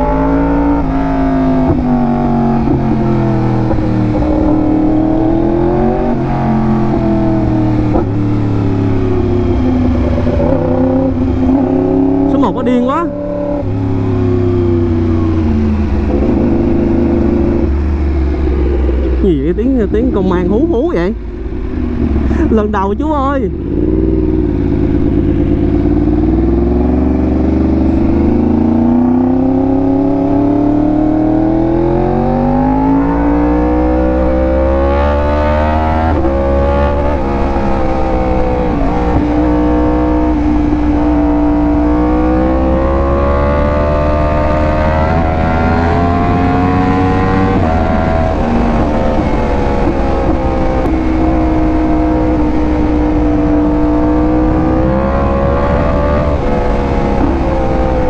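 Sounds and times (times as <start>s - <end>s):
motorcycle engine accelerating: 0.0s - 58.0s.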